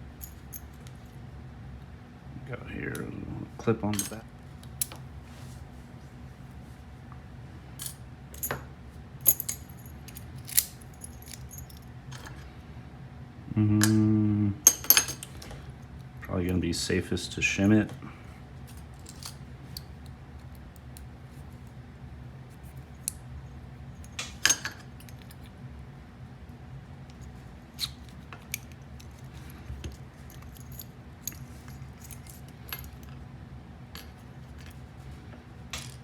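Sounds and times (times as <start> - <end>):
metallic clicks of padlock parts: 9.3 - 12.3.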